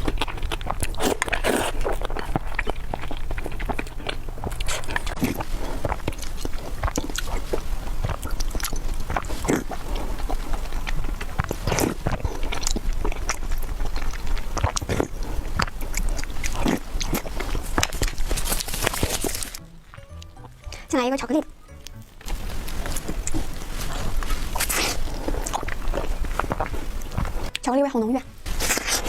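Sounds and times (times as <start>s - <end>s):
mouth clicks and wet smacks: 0.0s - 19.6s
person chewing food: 0.0s - 29.0s.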